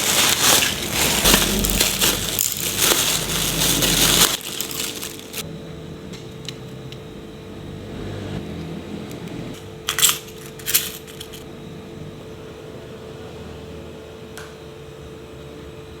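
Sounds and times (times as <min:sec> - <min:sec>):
loud rustling bursts: 0:00.0 - 0:05.4
steady low hum: 0:00.0 - 0:16.0.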